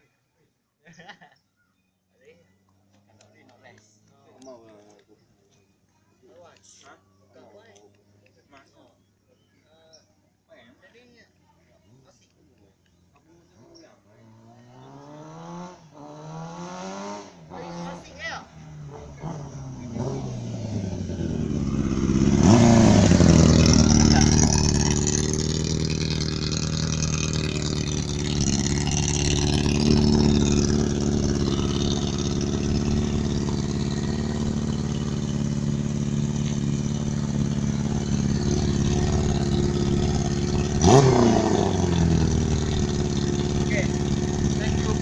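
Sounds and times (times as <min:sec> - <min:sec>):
motorcycle engine revving and idling: 0:14.0 - 0:45.0.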